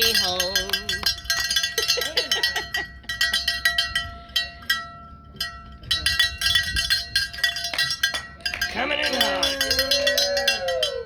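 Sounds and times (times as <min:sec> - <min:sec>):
handheld bells clanging: 0:00.0 - 0:11.0
person whooping: 0:09.5 - 0:11.0.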